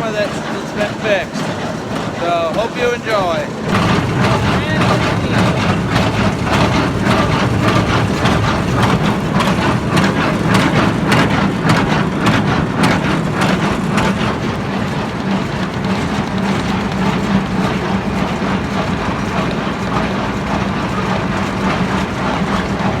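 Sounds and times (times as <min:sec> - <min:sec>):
hay baler clattering: 0:00.0 - 0:23.0
tractor engine running: 0:00.0 - 0:23.0.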